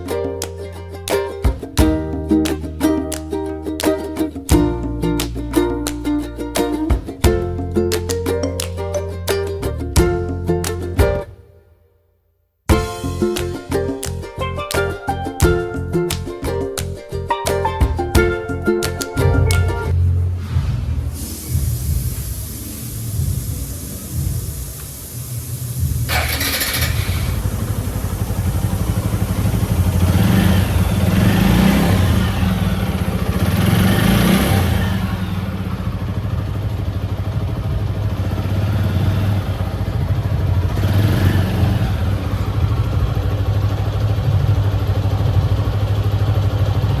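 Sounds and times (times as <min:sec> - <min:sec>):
motorcycle engine revving: 0:25.8 - 0:47.0.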